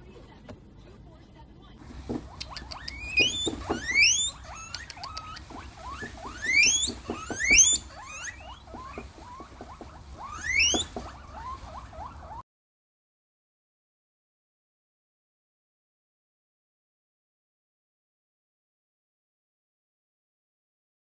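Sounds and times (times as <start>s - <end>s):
animal squealing calls: 1.9s - 12.4s.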